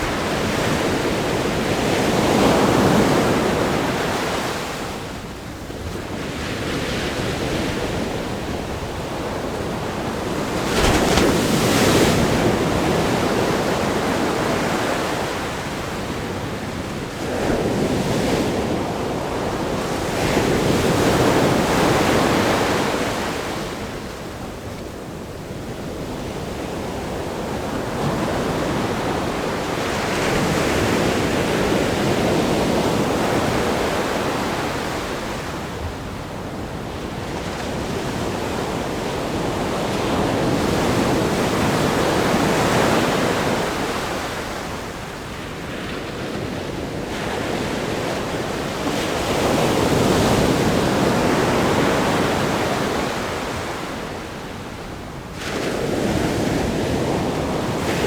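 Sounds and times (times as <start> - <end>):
ocean waves breaking: 7.3 - 15.9.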